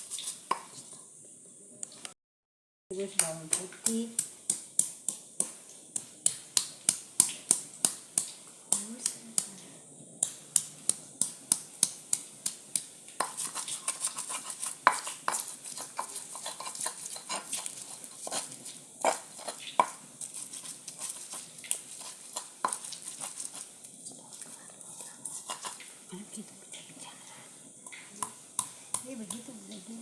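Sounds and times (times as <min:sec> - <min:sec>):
pestle pounding in a mortar: 0:10.2 - 0:20.0, 0:20.9 - 0:23.4
pestle scraping in a mortar: 0:13.2 - 0:23.7, 0:25.3 - 0:25.9.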